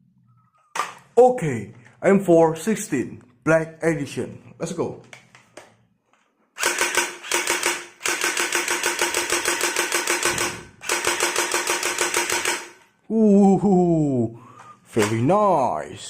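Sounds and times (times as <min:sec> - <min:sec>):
toy rifle rapid firing: 0:06.6 - 0:12.9.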